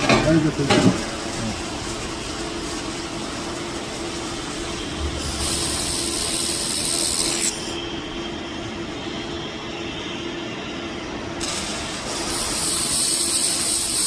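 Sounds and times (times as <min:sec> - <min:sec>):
loud hiss of laser weld: 0:00.0 - 0:07.8, 0:11.4 - 0:14.0
welder machine hum: 0:00.0 - 0:14.0.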